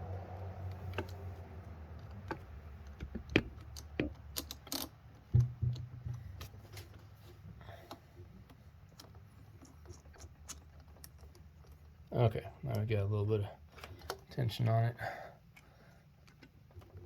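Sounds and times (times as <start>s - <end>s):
loud knocks: 5.4s - 6.2s.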